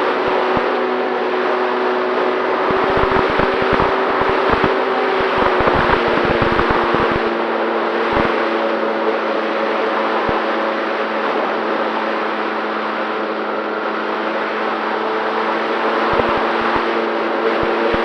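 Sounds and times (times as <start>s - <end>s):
electric motor and propeller: 2.1s - 8.5s, 15.7s - 18.0s
low wind buffets: 2.4s - 8.5s
wind rushing on microphone: 2.6s - 7.4s, 8.0s - 8.4s, 16.1s - 17.0s.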